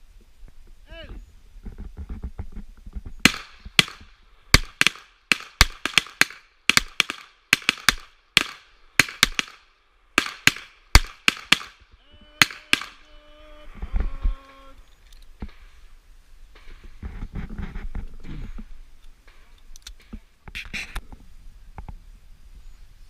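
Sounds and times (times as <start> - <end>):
pistol shots: 3.2 - 11.8, 12.4 - 13.0.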